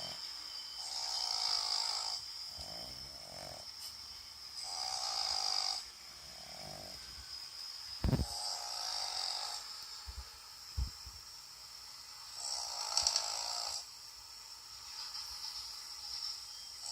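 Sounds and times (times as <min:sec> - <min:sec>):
dog snoring: 0:00.8 - 0:03.9, 0:04.6 - 0:07.0, 0:12.4 - 0:13.8.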